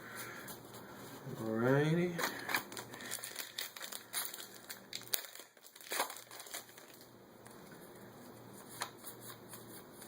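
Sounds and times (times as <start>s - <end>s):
foil wrapper crinkling: 0.2s - 7.7s.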